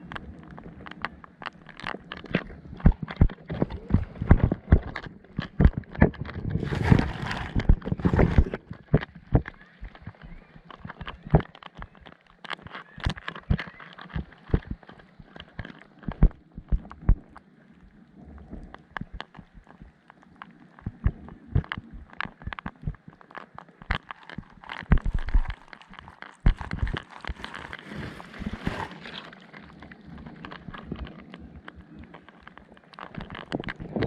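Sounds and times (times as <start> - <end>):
sharp clicks and knocks: 0.1 - 17.9, 18.6 - 27.8.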